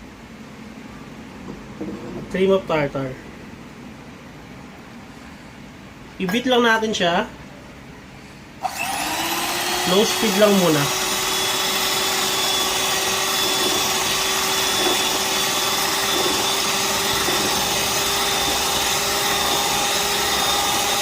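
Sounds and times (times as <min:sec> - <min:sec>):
electric mixer whirring: 0:08.6 - 0:21.0.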